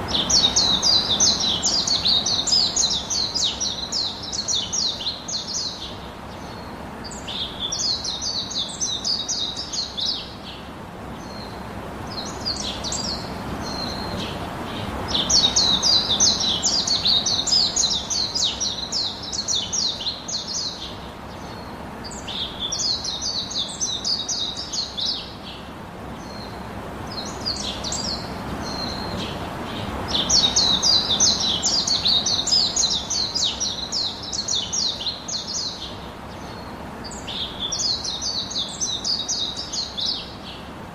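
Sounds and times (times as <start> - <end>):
background hiss: 0.0 - 40.9
birds chirping: 0.0 - 40.9.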